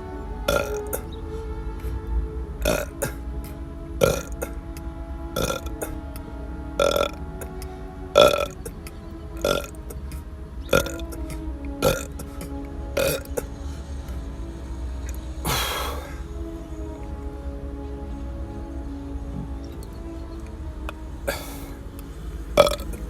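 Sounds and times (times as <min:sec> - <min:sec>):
background music: 0:00.0 - 0:23.0
short burps: 0:02.6 - 0:03.2, 0:04.0 - 0:04.4, 0:05.4 - 0:05.7, 0:22.6 - 0:23.0.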